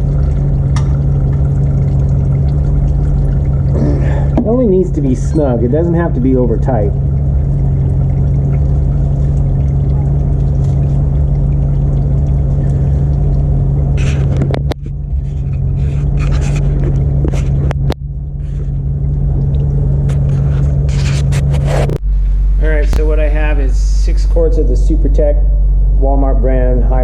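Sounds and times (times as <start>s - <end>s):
vehicle engine idling: 0.0s - 21.0s.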